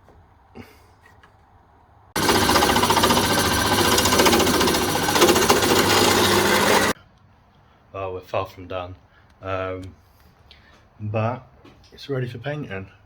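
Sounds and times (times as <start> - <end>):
power tool rattling: 2.2 - 7.0.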